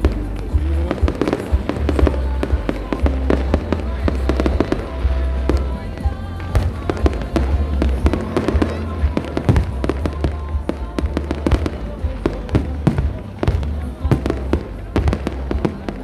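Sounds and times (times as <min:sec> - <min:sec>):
fireworks cracking and banging: 0:00.0 - 0:16.0.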